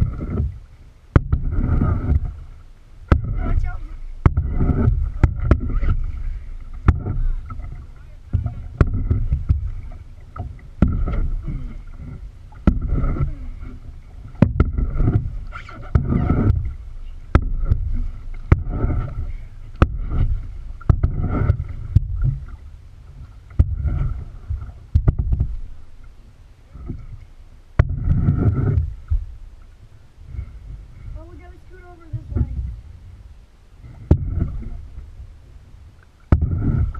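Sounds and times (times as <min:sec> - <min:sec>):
paddle splashing water: 0:00.0 - 0:36.9
sharp knocks: 0:01.1 - 0:02.3, 0:24.9 - 0:25.7.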